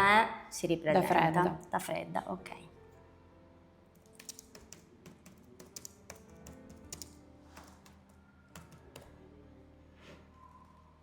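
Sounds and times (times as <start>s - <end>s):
soft background music: 0.0s - 11.0s
typing on computer keyboard: 4.0s - 9.1s.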